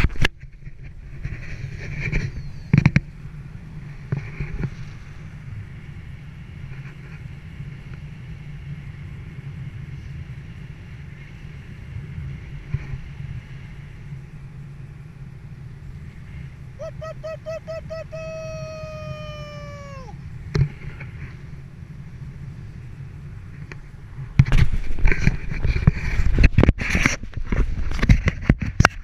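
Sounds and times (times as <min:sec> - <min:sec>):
wind rushing over microphone: 0:00.0 - 0:29.0.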